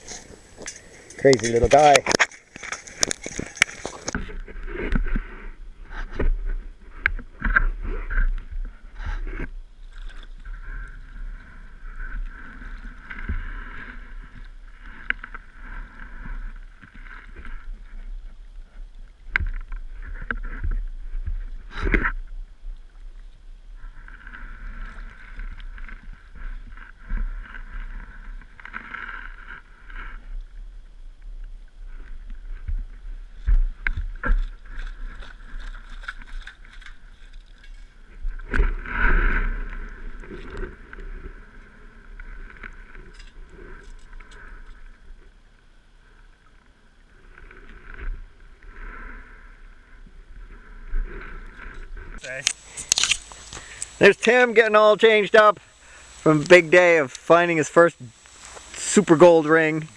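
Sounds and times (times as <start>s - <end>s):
sea water sloshing and splashing: 32.4s - 41.5s
steady hiss: 48.6s - 59.9s.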